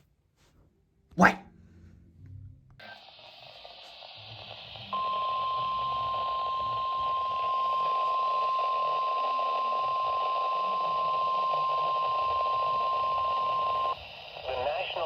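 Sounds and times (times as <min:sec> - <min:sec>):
radio static: 0:02.8 - 0:15.0
steady warning beep: 0:04.9 - 0:14.0.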